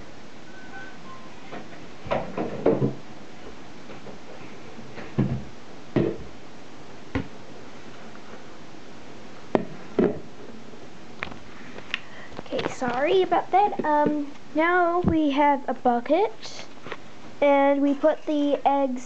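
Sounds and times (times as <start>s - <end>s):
objects knocking and clunking: 1.5s - 6.4s, 9.5s - 10.3s.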